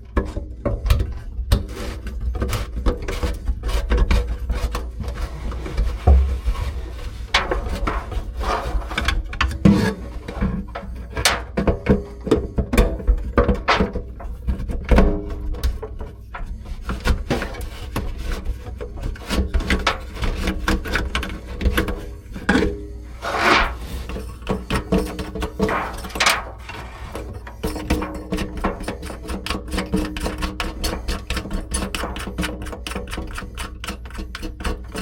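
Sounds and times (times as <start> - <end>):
scraping sounds: 1.6 - 11.5, 16.3 - 32.5.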